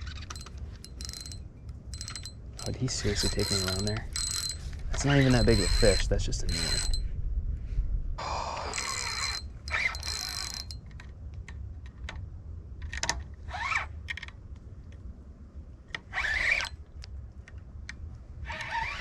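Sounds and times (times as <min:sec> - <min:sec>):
fishing reel ratcheting: 0:00.0 - 0:07.0, 0:08.7 - 0:10.8
short squeaks: 0:00.0 - 0:07.1, 0:08.6 - 0:10.8, 0:16.1 - 0:16.8, 0:18.5 - 0:19.0.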